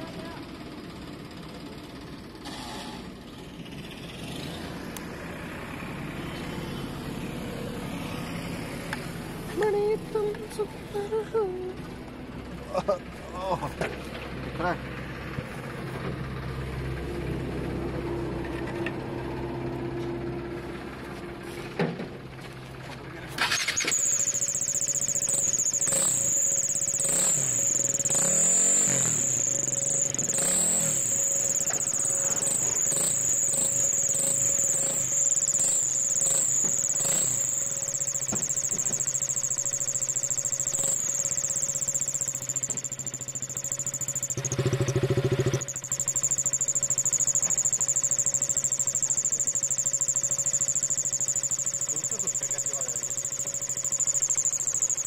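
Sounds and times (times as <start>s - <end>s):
motorcycle engine revving: 1.2s - 9.7s, 23.3s - 55.0s
high-pitched exhaust whistle: 23.5s - 55.0s.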